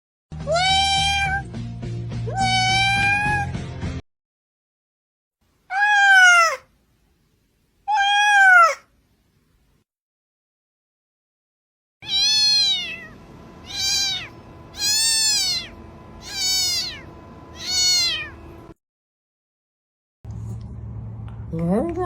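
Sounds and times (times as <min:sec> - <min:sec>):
cat meowing: 0:00.4 - 0:01.5, 0:02.3 - 0:03.6, 0:05.7 - 0:06.7, 0:07.8 - 0:08.9, 0:12.0 - 0:18.5
low droning background: 0:13.0 - 0:18.8, 0:20.3 - 0:22.0.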